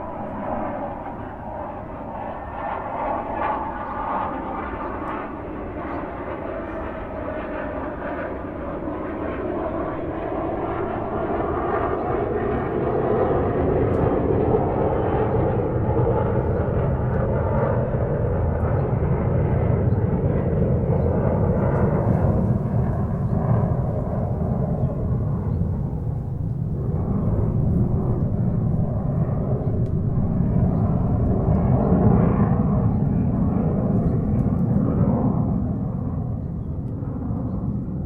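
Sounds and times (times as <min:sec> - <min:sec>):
airliner cabin airflow and engine drone: 0:00.0 - 0:38.0.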